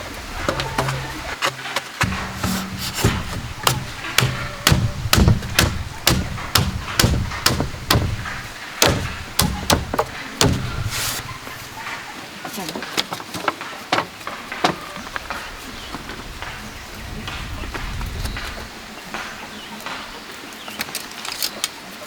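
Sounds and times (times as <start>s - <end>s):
tool striking bamboo: 0.5s - 14.8s.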